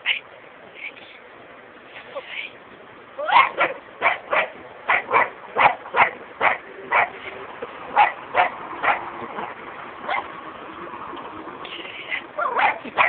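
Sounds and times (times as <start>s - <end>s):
dog barking in sharp yips: 3.2s - 7.1s, 12.4s - 13.0s.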